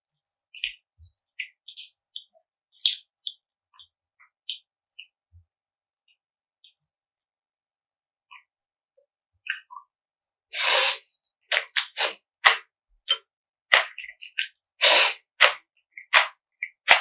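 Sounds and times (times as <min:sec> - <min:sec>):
slurping noodles: 0:10.6 - 0:12.2, 0:14.8 - 0:15.4.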